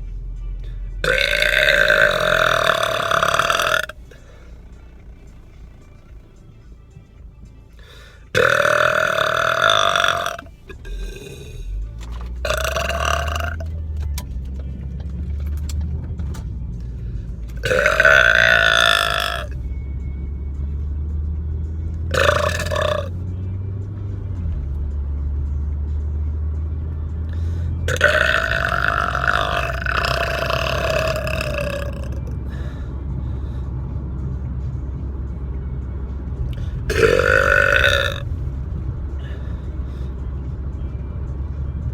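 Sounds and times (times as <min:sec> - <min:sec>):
car low rumble: 0:00.0 - 0:41.9
man belching loudly: 0:01.0 - 0:05.2, 0:08.4 - 0:11.8, 0:12.4 - 0:13.8, 0:17.6 - 0:19.6, 0:22.1 - 0:23.2, 0:27.9 - 0:32.3, 0:36.9 - 0:38.2.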